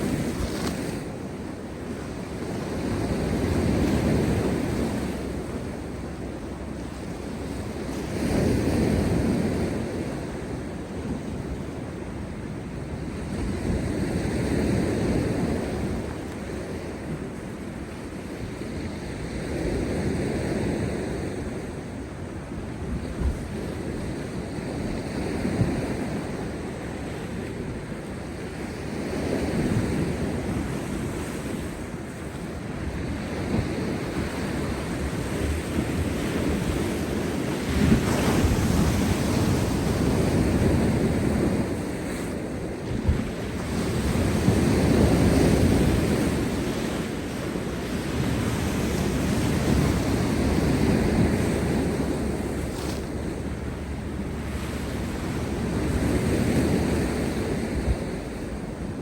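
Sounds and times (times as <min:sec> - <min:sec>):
wind buffeting microphone: 0:00.0 - 0:59.0.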